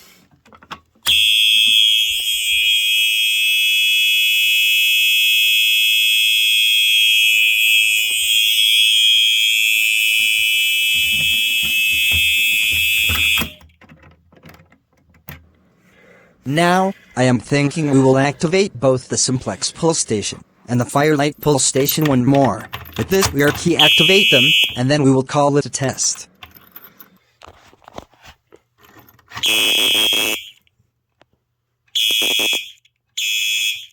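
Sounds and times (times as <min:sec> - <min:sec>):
fire alarm pull station click: 0:01.0 - 0:03.0, 0:07.8 - 0:13.8, 0:22.7 - 0:24.8
high-pitched electronic alarm horn: 0:01.1 - 0:13.6, 0:23.7 - 0:24.9, 0:29.4 - 0:30.6, 0:32.0 - 0:33.9.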